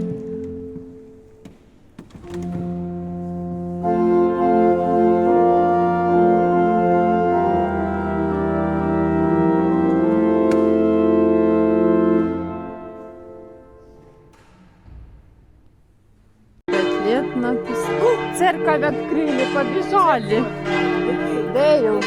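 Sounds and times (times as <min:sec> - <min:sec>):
pipe organ chords: 0:02.2 - 0:14.2, 0:16.7 - 0:22.0.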